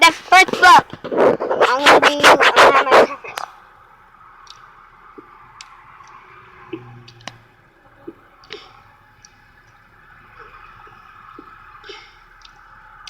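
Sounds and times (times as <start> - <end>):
faint clicks: 4.4 - 7.4.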